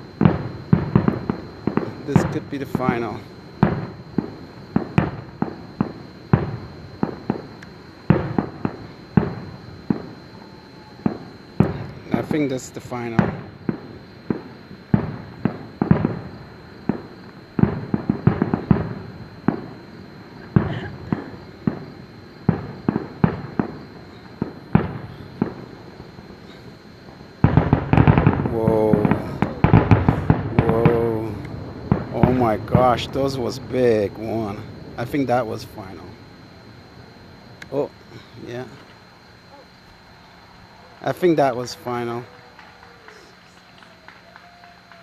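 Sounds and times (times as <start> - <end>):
fireworks shells bursting: 11.0 - 36.2.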